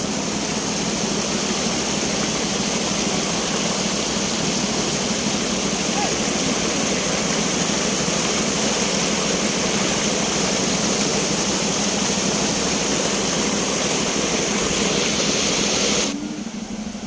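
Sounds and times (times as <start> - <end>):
water rushing: 0.0 - 17.0.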